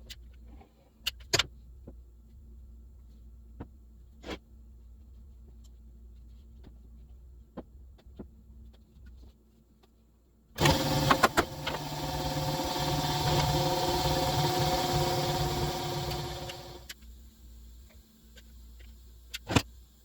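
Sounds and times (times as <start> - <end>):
power tool motor humming: 10.6 - 16.9
sharp clicks: 10.6 - 16.9.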